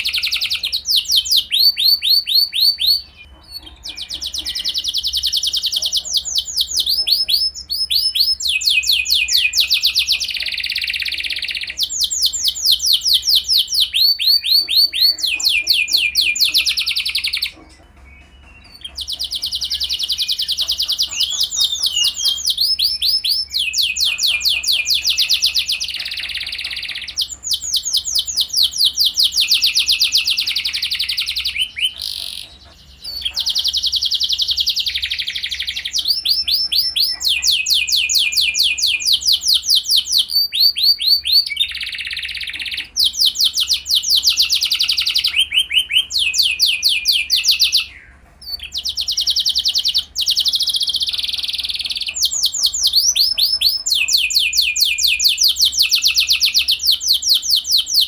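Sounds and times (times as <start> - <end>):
canary singing trills: 0.0 - 58.0.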